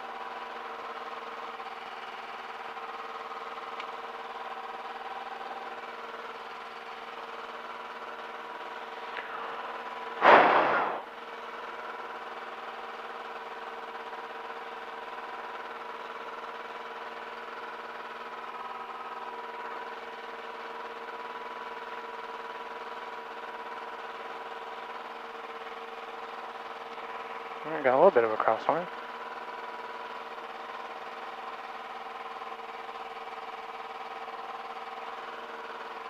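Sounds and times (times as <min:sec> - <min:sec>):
aircraft engine idling through headset: 0:02.3 - 0:12.2, 0:27.0 - 0:29.2
short loud noise burst: 0:10.2 - 0:11.1.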